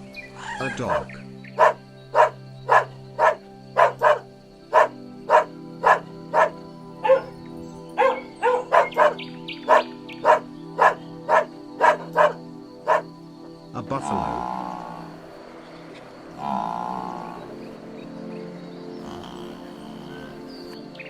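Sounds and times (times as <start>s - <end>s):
background music: 0.0s - 21.0s
dog barking sharply: 1.6s - 7.3s, 8.0s - 13.0s.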